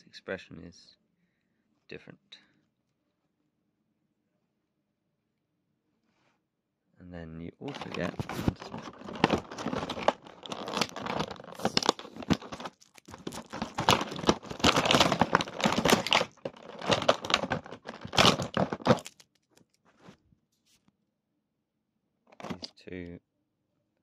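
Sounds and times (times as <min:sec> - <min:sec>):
plastic packaging crinkling: 0:07.6 - 0:19.8
plastic tearing: 0:07.7 - 0:19.8.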